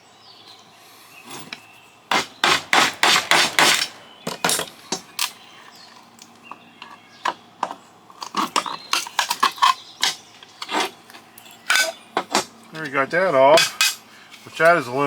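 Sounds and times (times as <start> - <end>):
hand tools knocking on metal housing: 3.6 - 5.1, 11.6 - 12.6, 13.6 - 14.0.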